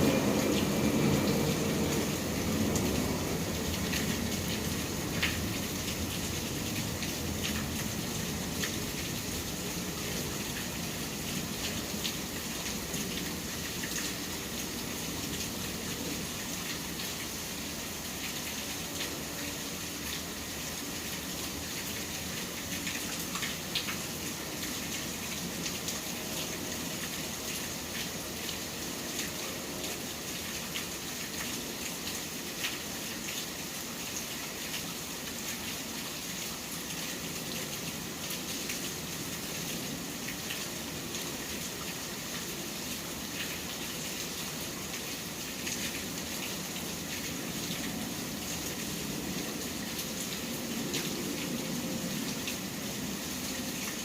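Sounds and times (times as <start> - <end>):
low city rumble: 0.0 - 17.1
steady rain falling: 0.0 - 54.0.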